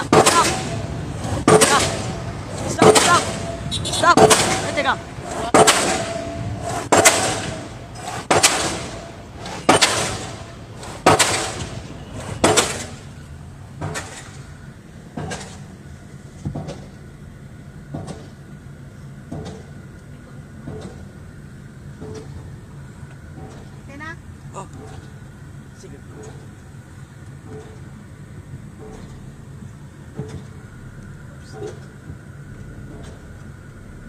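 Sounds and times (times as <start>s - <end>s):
pile driver hammer striking: 0.0s - 13.1s, 13.8s - 14.4s, 15.1s - 15.7s.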